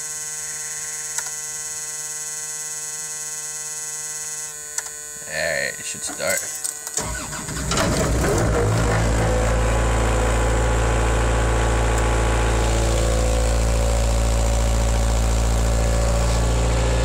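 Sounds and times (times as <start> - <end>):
diesel engine idling: 7.0 - 17.0.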